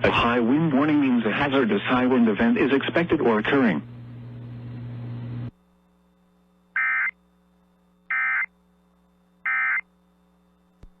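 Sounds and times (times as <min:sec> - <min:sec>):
steady radio hiss: 0:00.0 - 0:11.0
buzzy digital data tone bursts: 0:06.7 - 0:07.2, 0:08.1 - 0:08.5.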